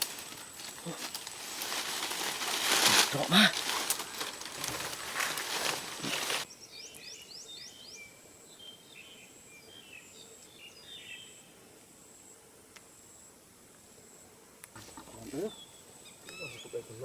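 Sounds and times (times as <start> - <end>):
noisy rustling: 0.0 - 6.5
small birds chirping: 5.1 - 11.4, 15.2 - 17.0.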